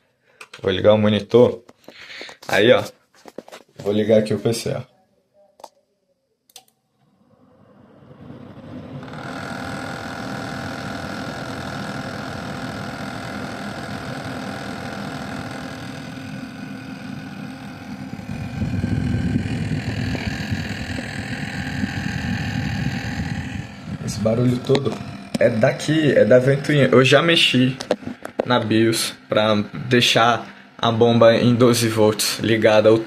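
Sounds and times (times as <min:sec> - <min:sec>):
water cooler pump whine: 0:06.5 - 0:33.0
low rumble: 0:18.1 - 0:27.0.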